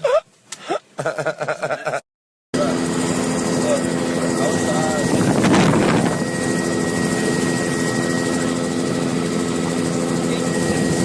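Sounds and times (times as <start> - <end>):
helicopter engine and rotor drone: 2.6 - 11.0
high whine: 2.6 - 11.0.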